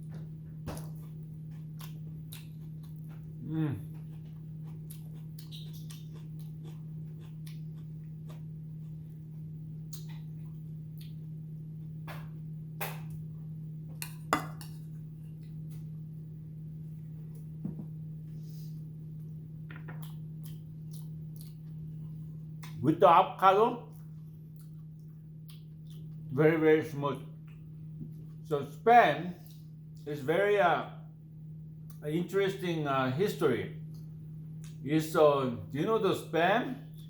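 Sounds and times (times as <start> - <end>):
steady low hum: 0.0 - 37.0
quiet chewing: 0.8 - 11.3, 19.2 - 22.8, 23.9 - 26.3.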